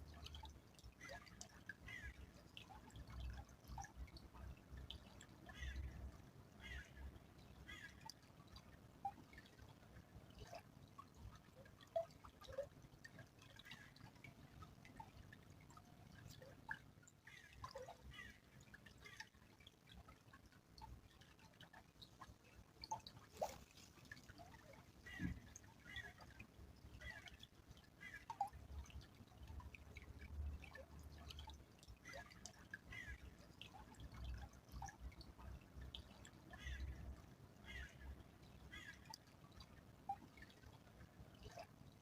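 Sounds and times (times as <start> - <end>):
stream trickling: 0.0 - 42.0
water drips: 0.0 - 42.0.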